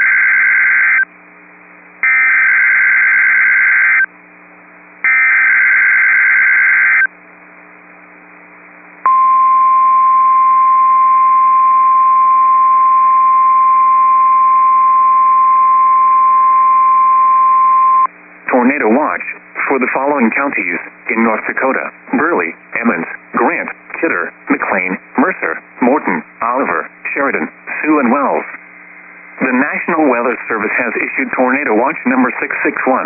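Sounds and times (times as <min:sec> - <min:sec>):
steady warning alarm tone: 0:05.1 - 0:07.1.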